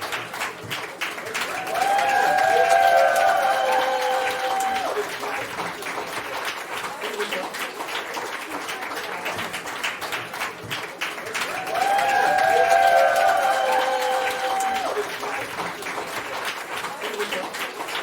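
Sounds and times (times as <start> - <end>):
crowd cheering: 0.0 - 18.0
crowd clapping: 0.0 - 18.0.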